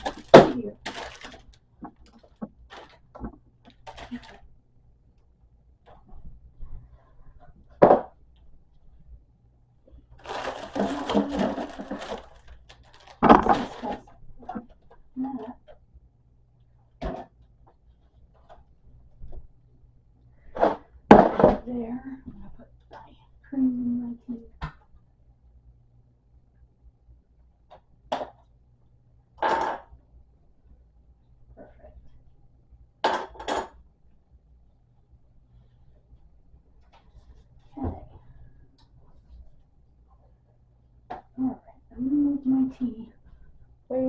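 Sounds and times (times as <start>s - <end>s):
frozen package knocking: 0.0s - 4.3s, 10.2s - 14.0s
packaging rustling: 0.0s - 4.5s, 10.2s - 14.1s.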